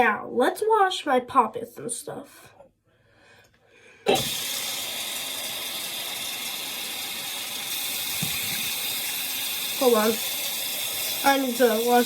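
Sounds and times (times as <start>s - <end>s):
tap water running into sink: 4.1s - 12.0s.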